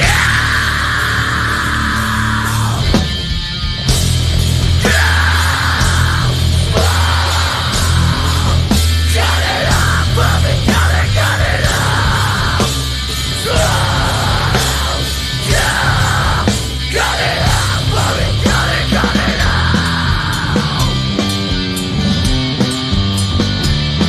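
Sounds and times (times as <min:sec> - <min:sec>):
screamed vocal: 0:00.0 - 0:03.0, 0:04.8 - 0:21.0
live rock band playing: 0:00.0 - 0:24.0.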